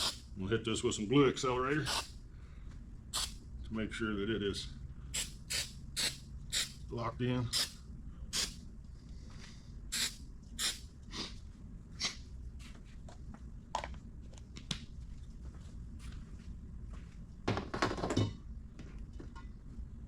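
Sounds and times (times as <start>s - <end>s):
spray squirts: 3.2s - 3.4s, 9.9s - 10.8s.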